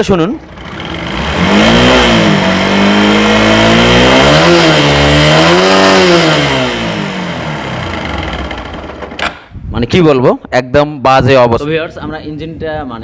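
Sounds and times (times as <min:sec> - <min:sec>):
motorcycle engine revving: 0:00.4 - 0:09.5.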